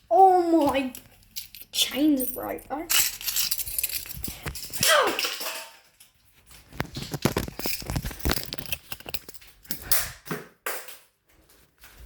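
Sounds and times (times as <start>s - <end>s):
handcuffs clicking and rattling: 0.6s - 5.5s, 7.1s - 9.5s.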